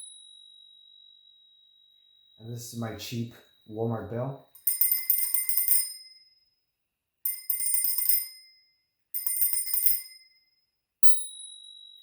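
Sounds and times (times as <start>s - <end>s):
bicycle bell clear ringing tone: 4.6s - 6.3s, 7.3s - 12.0s
bicycle bell rapid dings: 4.6s - 6.4s, 7.3s - 12.0s.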